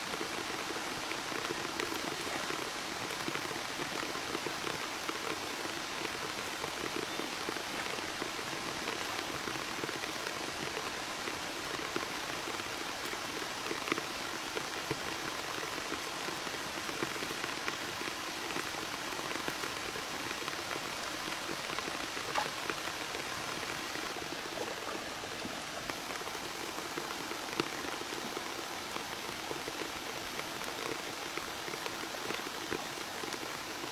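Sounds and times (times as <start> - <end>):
rain patter: 0.0 - 33.9.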